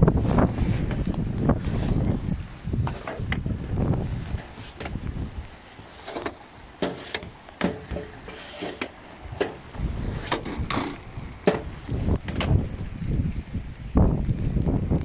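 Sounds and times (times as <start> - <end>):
wind on microphone: 0.0 - 15.0
sharp knocks and scrapes: 2.8 - 3.4, 5.8 - 12.6.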